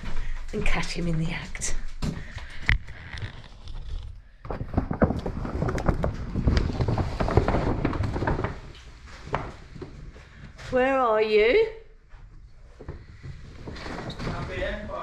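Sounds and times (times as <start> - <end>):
footsteps: 0.0 - 11.0.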